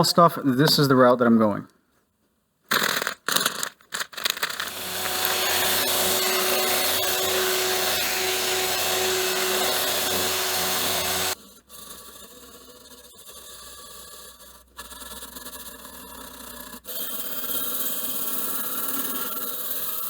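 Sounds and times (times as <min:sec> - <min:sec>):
electric motor tool whining: 0:04.3 - 0:11.4.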